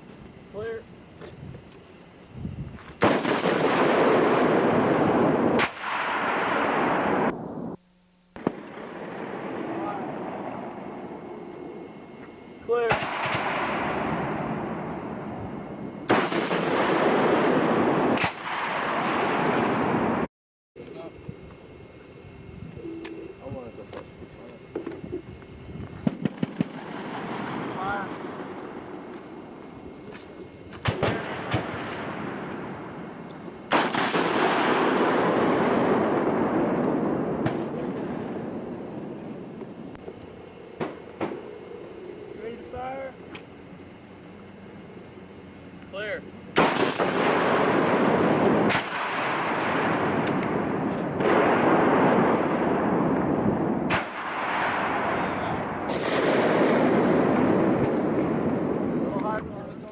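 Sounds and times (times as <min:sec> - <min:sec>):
rifle blast: 0:03.0 - 0:07.8, 0:08.4 - 0:11.4, 0:12.8 - 0:20.3, 0:26.0 - 0:40.0, 0:40.7 - 0:41.6, 0:46.5 - 0:59.3
long rolling echo: 0:08.4 - 0:20.3, 0:26.2 - 0:59.9.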